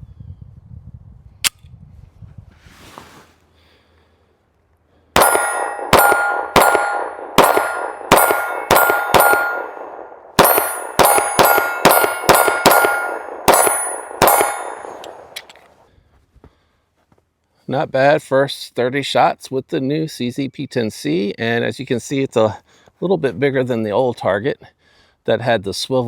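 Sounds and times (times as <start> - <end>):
steel target ringing: 5.2 - 15.4
pistol shots: 5.2 - 15.6.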